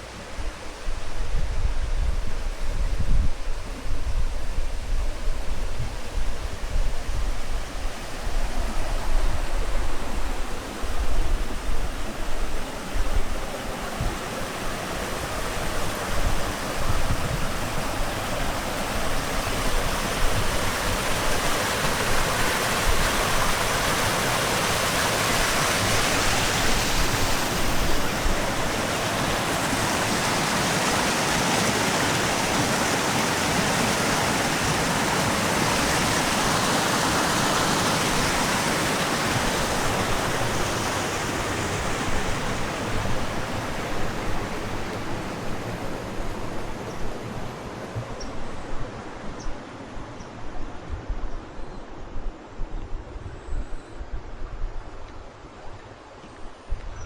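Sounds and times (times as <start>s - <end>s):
stream water rushing: 0.0s - 51.1s
wind gusts on microphone: 0.0s - 57.0s.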